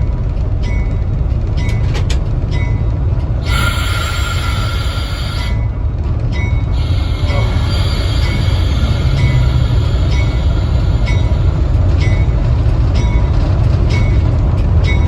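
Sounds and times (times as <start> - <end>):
train rolling on rails: 0.0 - 15.0
high-pitched squeal: 3.4 - 5.8, 6.7 - 12.5.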